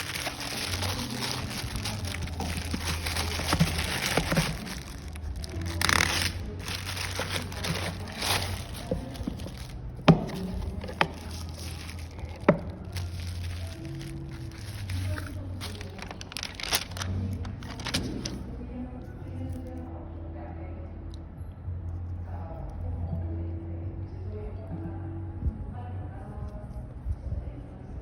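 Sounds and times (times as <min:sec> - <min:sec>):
packaging crinkling and rustling: 0:00.0 - 0:18.5.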